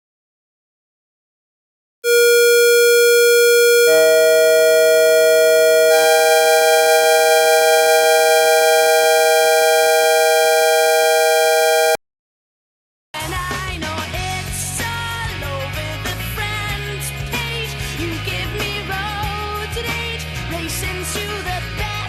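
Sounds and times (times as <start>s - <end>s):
synthesized alert tone: 2.1s - 12.0s.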